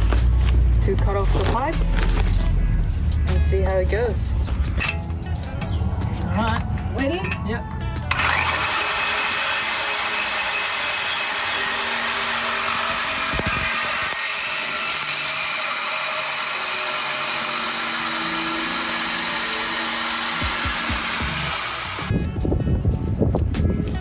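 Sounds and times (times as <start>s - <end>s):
reciprocating saw cutting metal: 8.1s - 22.1s.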